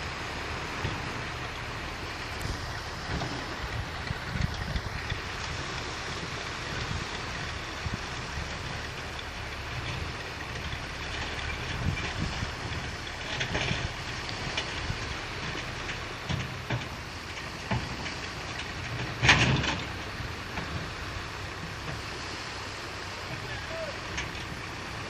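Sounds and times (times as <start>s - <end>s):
bulldozer diesel engine running: 0.0s - 25.0s
metallic clanks and knocks: 8.7s - 21.0s, 24.1s - 24.6s.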